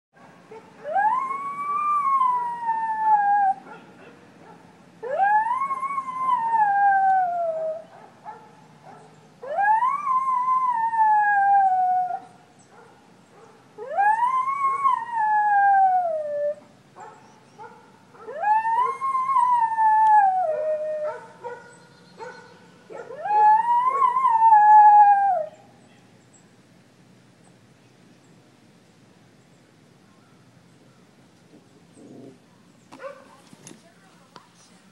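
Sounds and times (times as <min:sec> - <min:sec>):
dog howling: 0:00.8 - 0:03.6, 0:09.4 - 0:12.3, 0:18.3 - 0:21.3, 0:23.0 - 0:25.6.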